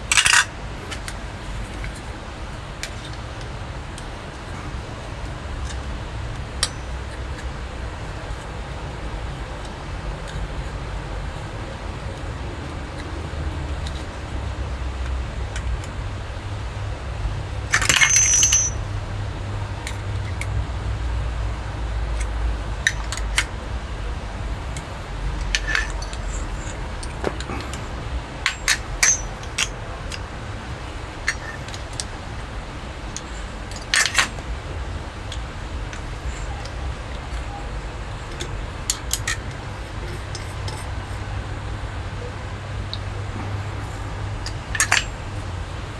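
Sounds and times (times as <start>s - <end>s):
metal faucet parts clinking: 0.1s - 2.1s, 6.6s - 7.5s, 17.7s - 19.0s, 22.2s - 23.5s, 24.8s - 30.3s, 31.2s - 32.2s, 33.1s - 34.4s, 38.2s - 41.3s, 44.4s - 45.4s.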